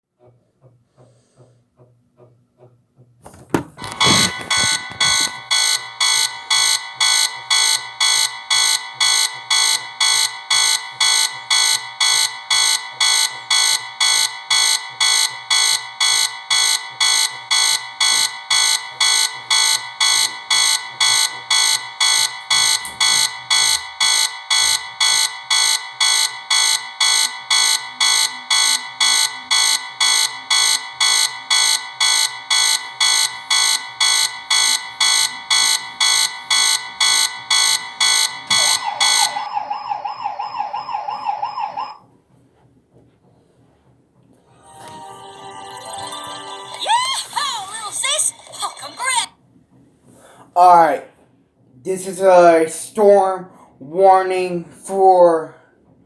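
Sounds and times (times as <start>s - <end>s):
high-pitched electronic alarm beeping: 3.3s - 42.0s, 44.5s - 49.3s.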